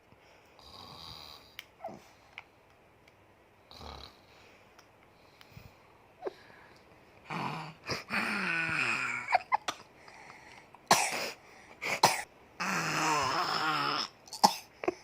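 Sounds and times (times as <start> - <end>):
baby snoring and wheezing: 7.3 - 9.5, 12.6 - 14.2.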